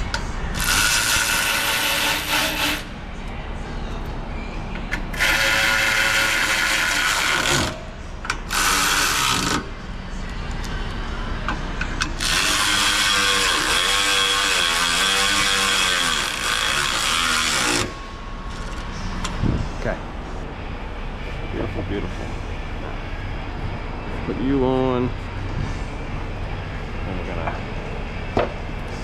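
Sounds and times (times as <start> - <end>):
cordless power driver running bolts: 0.0 - 2.9, 4.9 - 9.6, 11.9 - 18.0.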